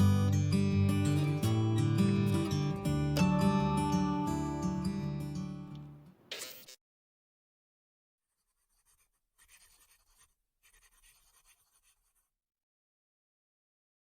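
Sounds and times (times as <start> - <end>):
faint scratching: 8.3 - 12.4.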